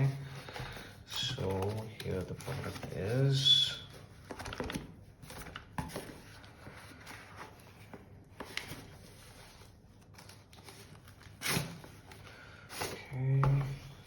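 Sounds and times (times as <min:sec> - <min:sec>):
cardboard rustling: 0:00.0 - 0:14.0.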